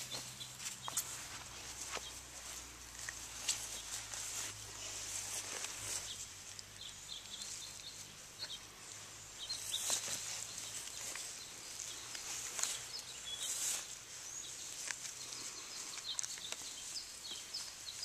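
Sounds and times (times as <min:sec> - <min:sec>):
puppies scuffling and rustling: 0:00.0 - 0:18.0.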